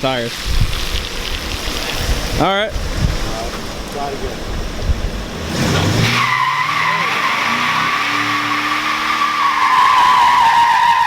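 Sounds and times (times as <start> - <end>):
car engine revving: 3.4 - 11.0
tires squealing: 5.2 - 11.0.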